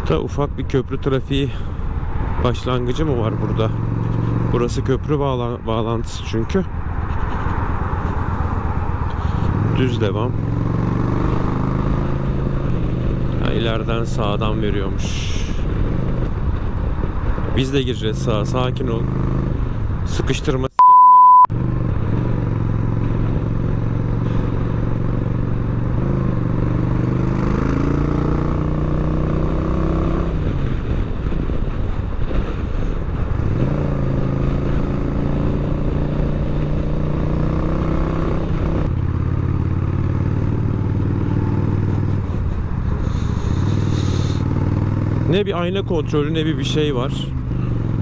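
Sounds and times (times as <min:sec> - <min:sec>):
rushing riding noise: 0:00.0 - 0:20.4, 0:21.6 - 0:48.0
motorcycle engine pulling: 0:31.7 - 0:48.0.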